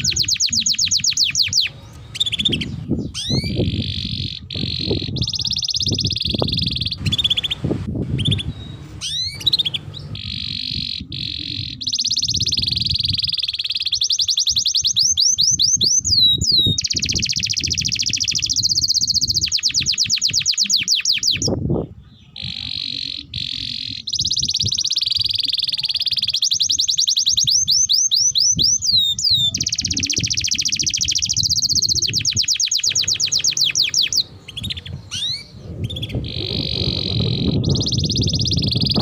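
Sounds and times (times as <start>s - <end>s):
low rumbling noise: 0.0s - 13.8s, 31.3s - 39.0s
canary singing trills: 0.0s - 39.0s.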